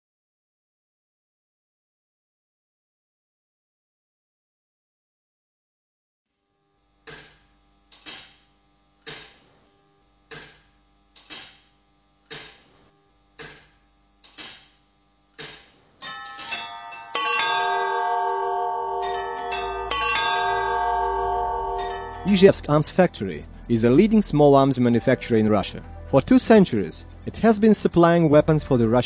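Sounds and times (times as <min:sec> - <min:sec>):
bell-like chime strikes: 0:16.0 - 0:22.8
sustained bell-like chord: 0:16.0 - 0:24.1.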